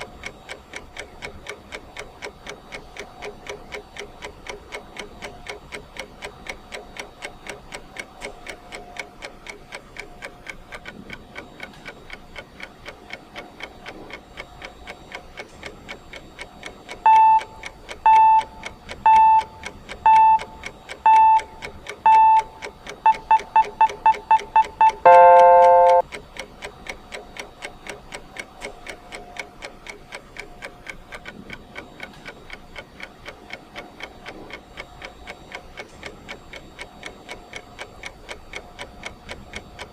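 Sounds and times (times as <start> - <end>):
clock ticking: 0.0 - 39.9
timer beeps: 16.9 - 26.1
multi-tone beep: 17.1 - 26.0.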